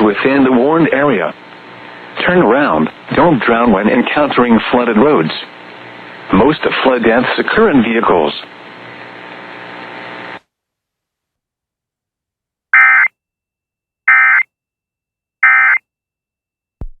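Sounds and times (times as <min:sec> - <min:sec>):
steady hiss with faint hum: 0:00.0 - 0:10.4
data tone blasts: 0:12.8 - 0:13.1, 0:14.1 - 0:14.4, 0:15.4 - 0:15.8.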